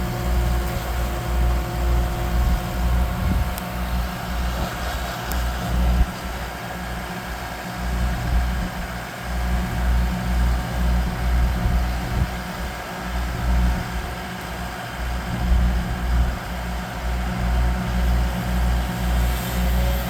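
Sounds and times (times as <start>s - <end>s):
engine idling: 0.0s - 20.0s.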